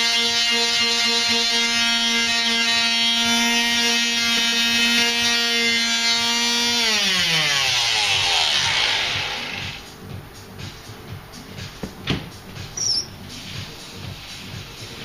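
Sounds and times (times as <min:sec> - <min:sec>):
electric sander running: 0:00.0 - 0:09.9.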